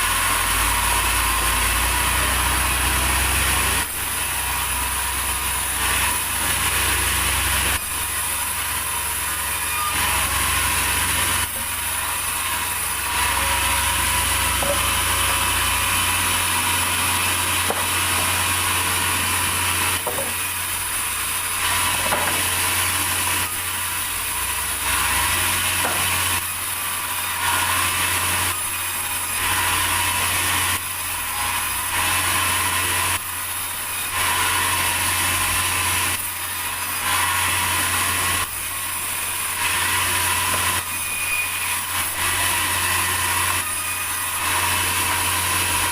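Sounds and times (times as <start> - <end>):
sawmill machinery sawing log: 0.0 - 45.9.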